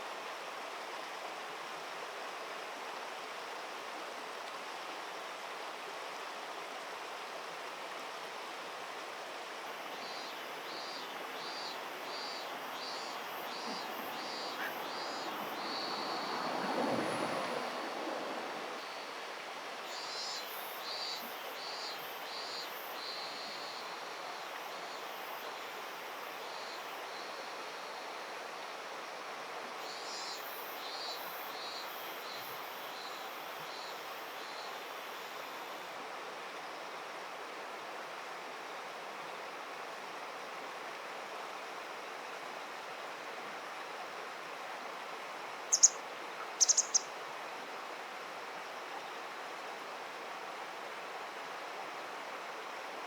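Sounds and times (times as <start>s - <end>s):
flowing river water: 0.0s - 53.0s
loud sharp high calls: 46.6s - 47.1s.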